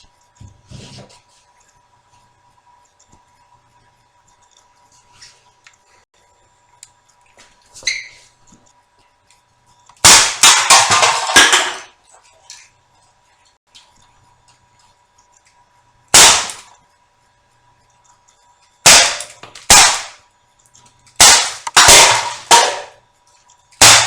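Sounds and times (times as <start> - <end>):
airsoft pistol shots: 10.0 - 11.5, 16.2 - 16.7, 18.9 - 20.2, 21.2 - 23.0, 23.8 - 24.0
cans clattering: 10.1 - 12.0, 21.4 - 23.0.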